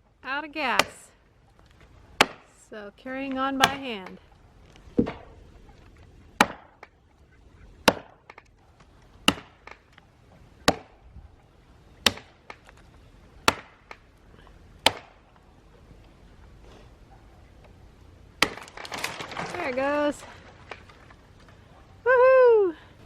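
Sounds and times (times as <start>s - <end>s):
axe chopping wood: 0.8s - 1.0s, 2.2s - 2.6s, 3.3s - 4.2s, 5.0s - 5.4s, 6.4s - 6.9s, 7.8s - 8.5s, 9.2s - 9.9s, 10.6s - 11.0s, 12.0s - 12.7s, 13.4s - 14.1s, 14.8s - 15.3s, 18.4s - 20.0s.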